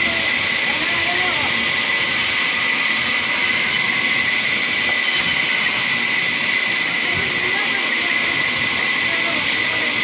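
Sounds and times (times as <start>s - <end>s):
sawmill saw hiss and whine: 0.0s - 10.0s.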